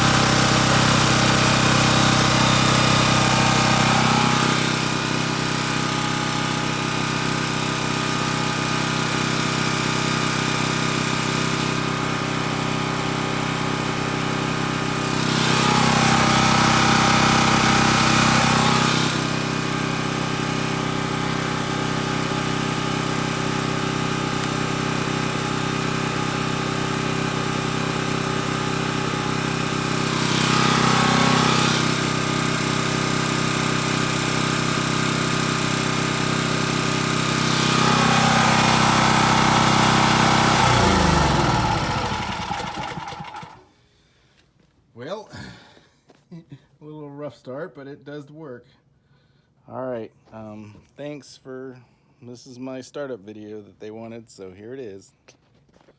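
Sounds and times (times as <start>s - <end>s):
generator engine running: 0.0s - 43.7s.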